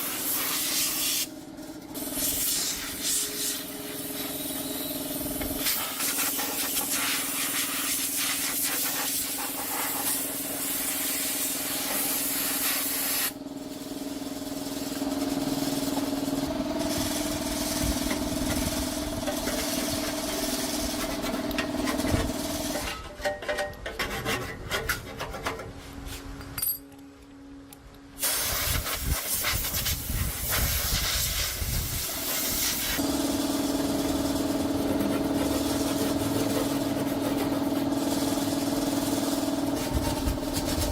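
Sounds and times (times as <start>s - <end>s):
strong hiss: 2.0s - 4.4s, 28.2s - 36.7s
machine humming: 33.0s - 40.9s.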